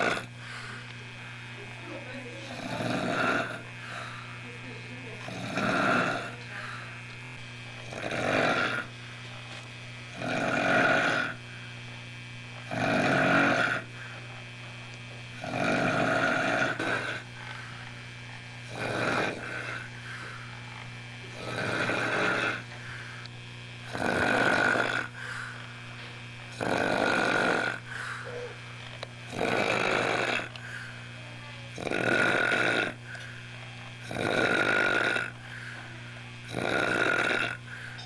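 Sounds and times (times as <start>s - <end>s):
loud pig-like snoring: 0.0s - 0.3s, 2.3s - 4.2s, 5.2s - 6.5s, 7.8s - 8.9s, 10.1s - 11.4s, 12.7s - 14.0s, 15.4s - 17.3s, 18.7s - 22.7s, 23.8s - 25.3s, 26.5s - 28.6s, 29.3s - 30.6s, 31.7s - 33.0s, 34.0s - 35.4s, 36.4s - 37.7s
steady low hum: 0.0s - 38.0s.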